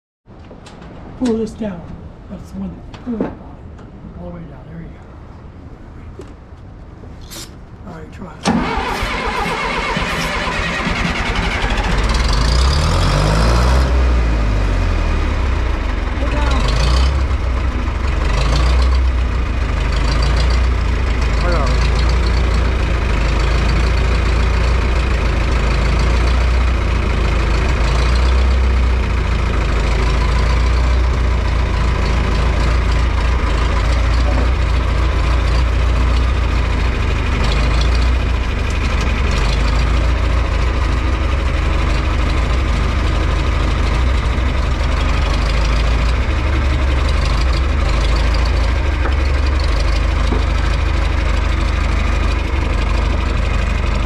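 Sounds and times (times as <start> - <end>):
tractor engine rumbling: 0.3 - 54.0.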